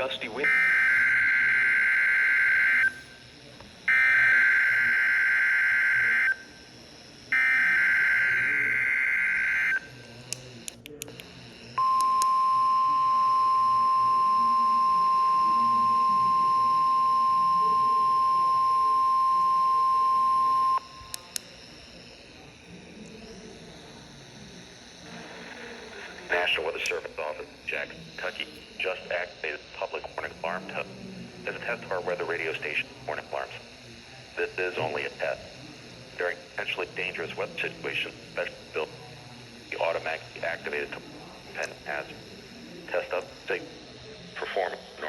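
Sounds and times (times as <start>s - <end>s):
buzzy digital data bursts: 0.0s - 10.3s, 11.3s - 45.0s
steady warning alarm tone: 0.0s - 45.0s
clicks: 10.0s - 12.4s, 20.8s - 21.6s.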